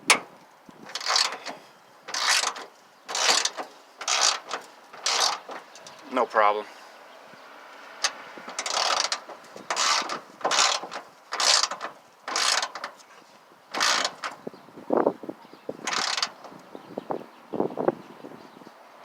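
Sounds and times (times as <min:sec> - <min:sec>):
dull metal knocks: 0:00.0 - 0:06.0.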